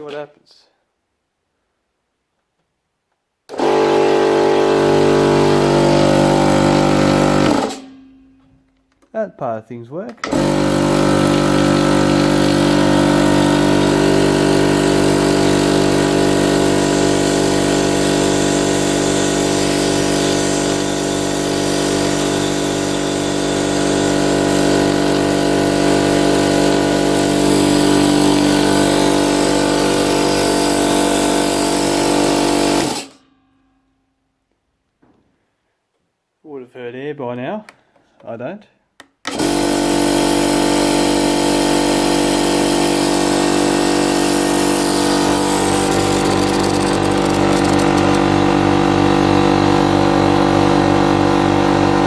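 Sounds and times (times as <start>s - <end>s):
air compressor running: 3.5s - 7.9s, 10.2s - 33.2s, 39.3s - 52.0s.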